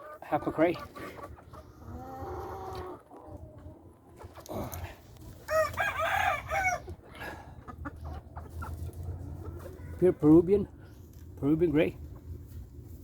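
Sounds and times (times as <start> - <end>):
rooster crowing: 5.5 - 6.9.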